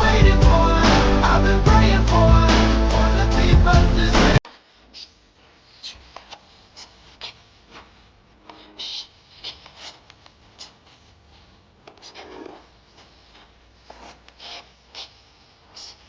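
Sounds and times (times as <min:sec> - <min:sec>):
scratching and rustling: 0:04.8 - 0:16.0.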